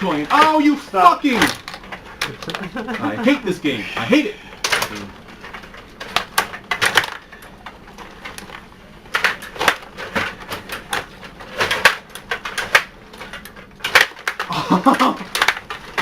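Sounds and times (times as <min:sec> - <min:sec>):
plastic clacks of table hockey: 0:15.3 - 0:16.0.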